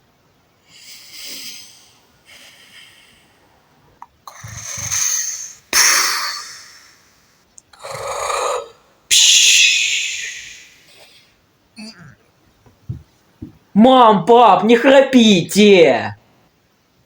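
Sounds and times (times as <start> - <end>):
sharp hissing exhale: 0.7 - 3.4, 4.3 - 11.4
people snoring: 4.3 - 5.6, 7.8 - 8.8.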